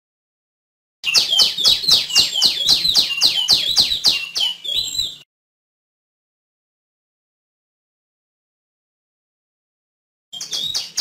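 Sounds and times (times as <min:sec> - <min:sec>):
bird calling sharp high notes: 0:01.0 - 0:05.2.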